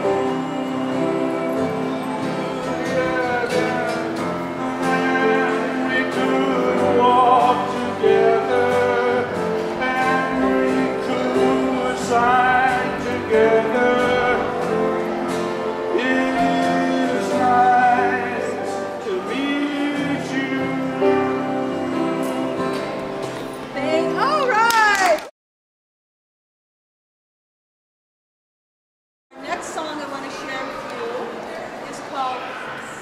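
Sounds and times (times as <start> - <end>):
person singing with vibrato: 0.0 - 24.5
instrumental backing music: 0.0 - 24.7.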